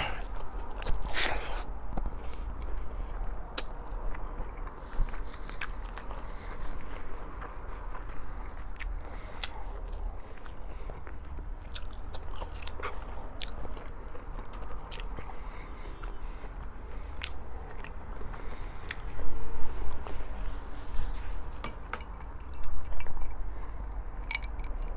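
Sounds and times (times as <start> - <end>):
chewing and biting food: 0.0 - 24.9
wet mouth clicks: 0.1 - 2.8, 3.4 - 4.3.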